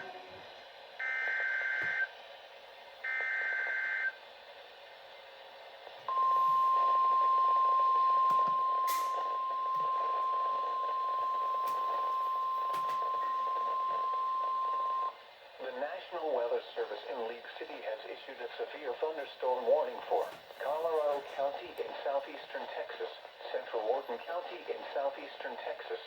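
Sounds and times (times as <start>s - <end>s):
steady warning tone: 3.0s - 4.2s, 6.1s - 15.2s
radio hiss: 15.6s - 26.0s.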